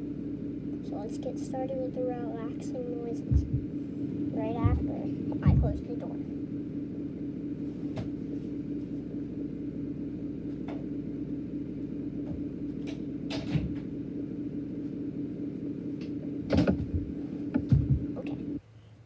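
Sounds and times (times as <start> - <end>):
steady low hum: 0.0 - 19.0
door handling knocks and clicks: 16.5 - 18.1.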